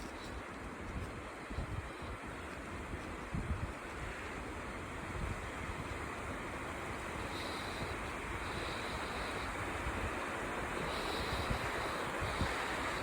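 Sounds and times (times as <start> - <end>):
wind buffeting microphone: 0.0 - 13.0
wind rushing hiss: 5.6 - 13.0.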